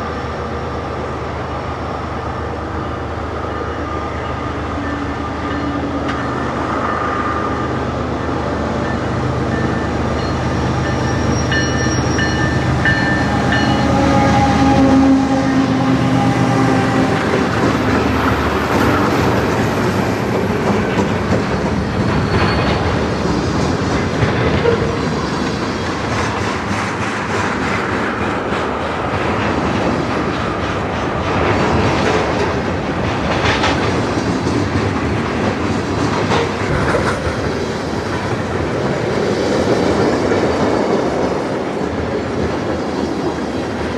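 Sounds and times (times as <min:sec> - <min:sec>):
diesel locomotive engine drone: 0:00.0 - 0:43.9
train wheels clicking over rail joints: 0:17.3 - 0:43.9.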